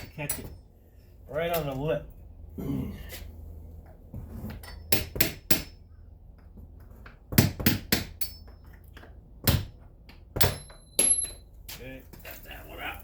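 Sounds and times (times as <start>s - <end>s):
hammer tapping steel punch: 4.6s - 5.8s, 7.1s - 11.5s.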